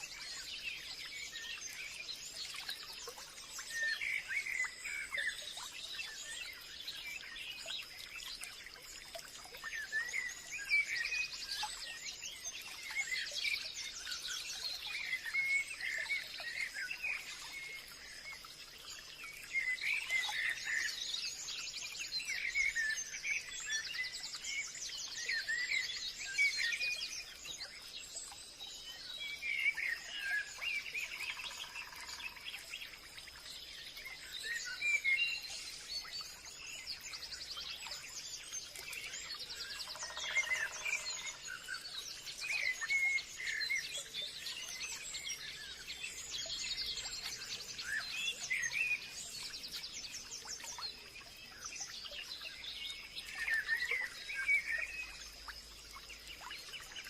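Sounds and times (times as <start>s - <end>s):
birds chirping and trilling: 39.1s - 57.0s.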